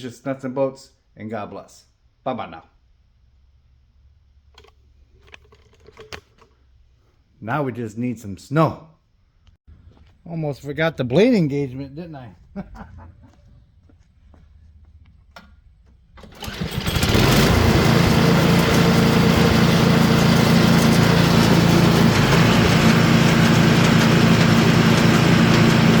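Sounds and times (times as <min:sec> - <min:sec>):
small engine starting and running: 0:16.2 - 0:26.0.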